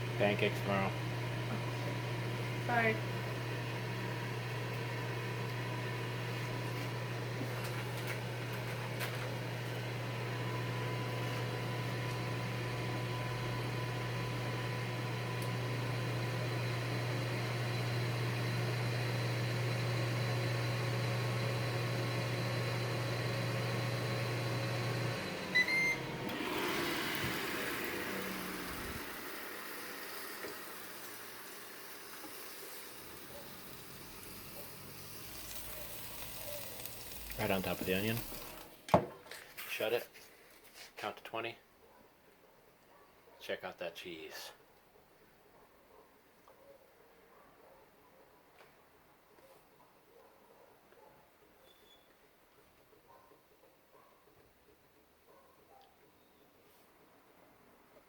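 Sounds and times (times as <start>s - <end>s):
grill fan humming: 0.0s - 38.8s
short beeps: 25.6s - 26.0s.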